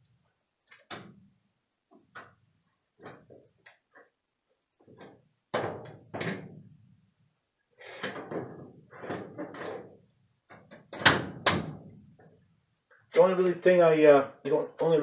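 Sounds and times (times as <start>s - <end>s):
objects knocking and thunking: 4.8s - 6.8s, 7.9s - 12.4s.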